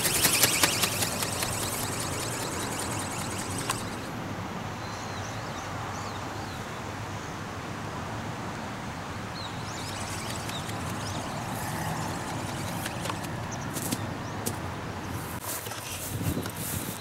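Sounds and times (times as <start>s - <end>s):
small birds chirping: 0.0s - 4.2s, 9.3s - 15.4s
strong wind on microphone: 16.0s - 17.0s.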